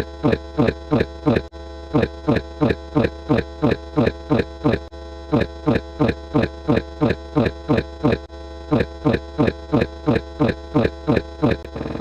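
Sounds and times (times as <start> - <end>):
low hum with sustained tones: 0.0 - 12.0.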